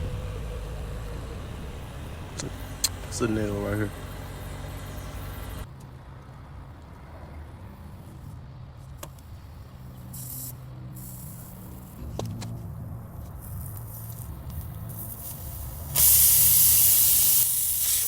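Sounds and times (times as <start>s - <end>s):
vehicle engine idling: 0.0s - 5.8s
short burst of hiss: 14.9s - 18.0s.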